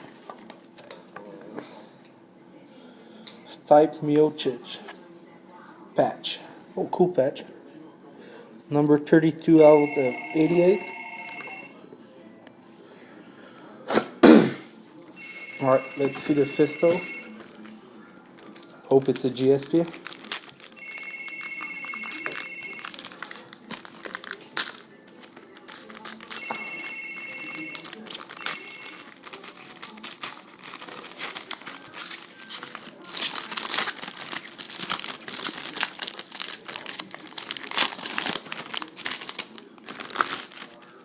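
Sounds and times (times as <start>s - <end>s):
short steady high tone: 9.6s - 11.7s
packaging torn and crinkled: 18.2s - 20.8s, 21.4s - 26.4s, 27.7s - 41.0s.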